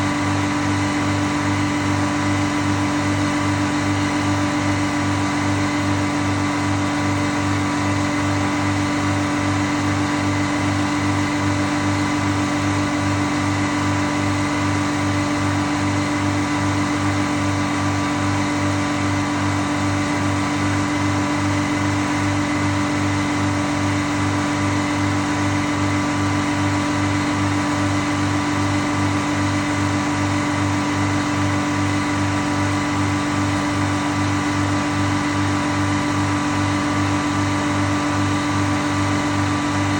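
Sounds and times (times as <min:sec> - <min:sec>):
sawmill drone: 0:00.0 - 0:39.9.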